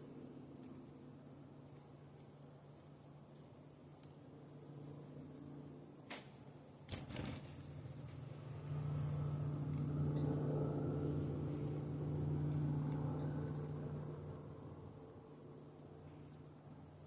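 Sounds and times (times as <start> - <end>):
engine hum: 0.0 - 17.0.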